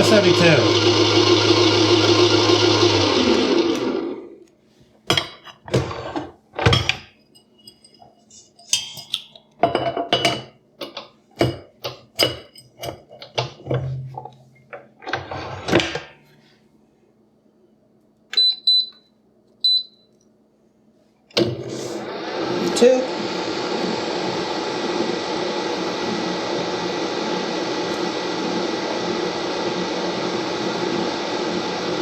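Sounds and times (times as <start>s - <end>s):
stand mixer motor running: 0.0s - 4.3s.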